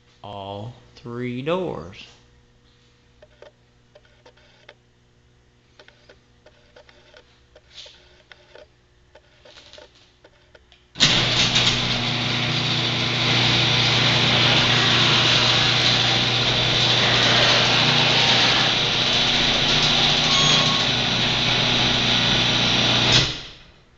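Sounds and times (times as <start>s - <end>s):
garage door opener motor whirring: 11.0s - 23.9s.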